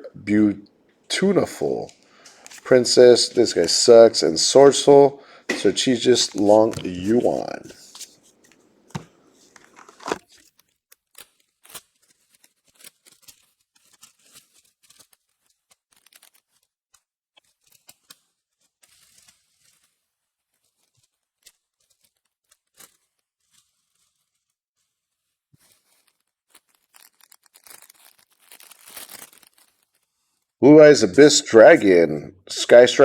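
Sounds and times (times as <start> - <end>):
foil wrappers tearing and crinkling: 5.6 - 8.5, 9.5 - 30.6.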